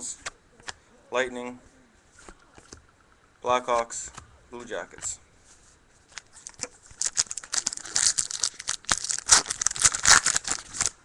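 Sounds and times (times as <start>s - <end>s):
foil wrapper tearing and crinkling: 6.2s - 11.0s.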